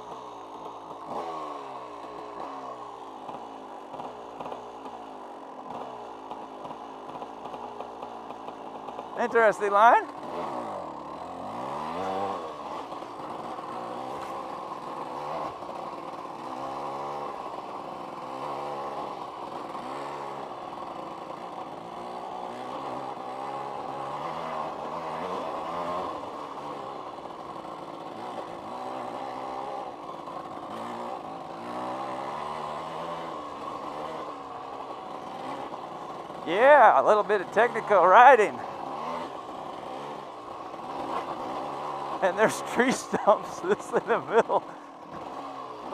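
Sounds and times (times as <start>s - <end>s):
dirt bike engine revving: 0.0s - 45.9s.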